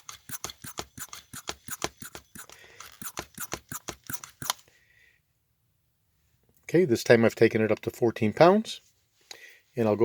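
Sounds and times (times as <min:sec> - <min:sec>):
hand vacuum pump clicking: 0:00.0 - 0:04.6.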